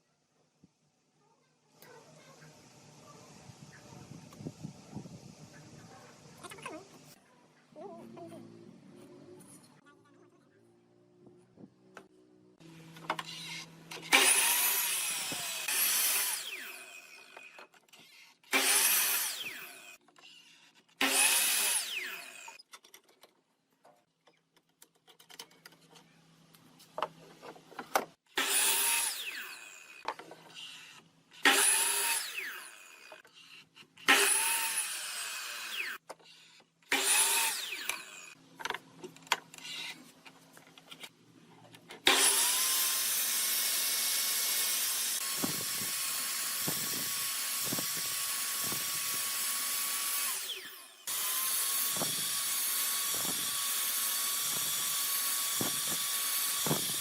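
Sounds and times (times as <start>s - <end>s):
power tool whining on wood: 12.6s - 22.6s, 28.3s - 38.4s, 42.0s - 57.0s.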